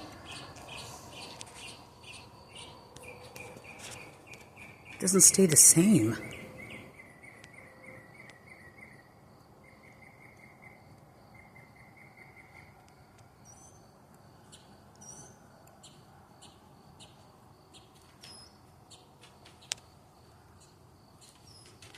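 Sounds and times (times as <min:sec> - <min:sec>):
insect trill: 0:00.0 - 0:21.9.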